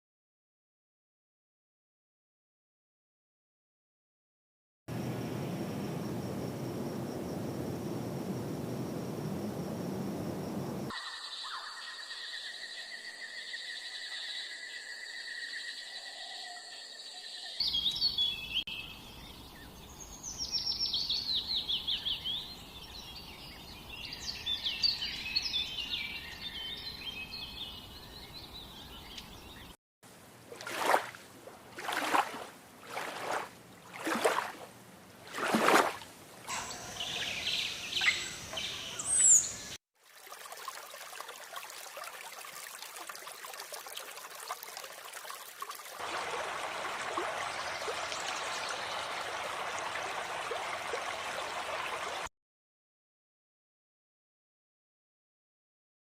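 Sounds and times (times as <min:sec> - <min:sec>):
flowing water: 0:30.1 - 0:52.3
birds chirping and singing: 0:36.5 - 0:39.8.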